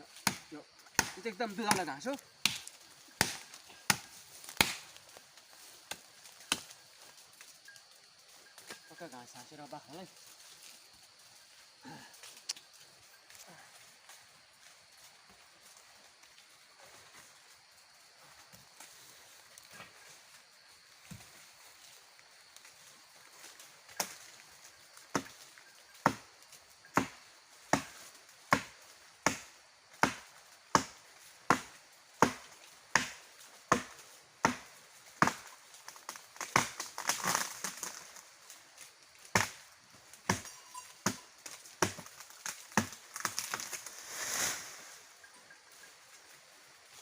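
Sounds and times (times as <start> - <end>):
leaves rustling: 0.0 - 47.0
blade chopping branches: 0.1 - 6.8, 23.9 - 24.3, 25.0 - 25.4, 26.0 - 26.3, 26.9 - 38.2, 39.3 - 44.7.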